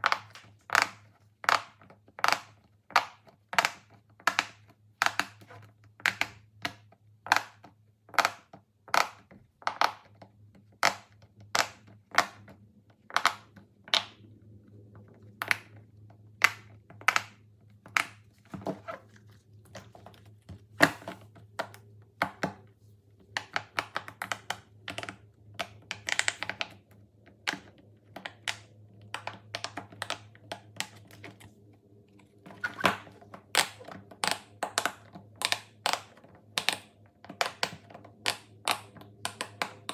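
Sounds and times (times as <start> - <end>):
fidget toys clicking and popping: 32.6 - 39.9.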